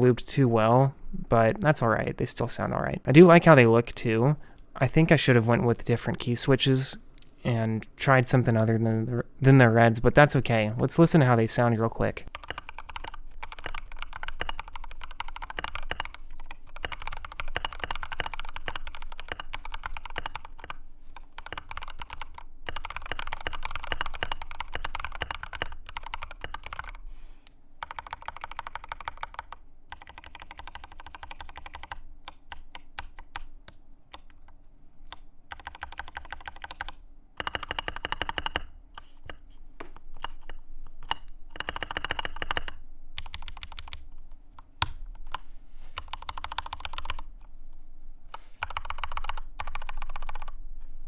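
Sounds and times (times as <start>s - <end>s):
mechanical keyboard typing: 12.3s - 27.0s, 27.8s - 34.5s, 35.1s - 44.1s, 46.0s - 47.3s, 48.3s - 50.6s.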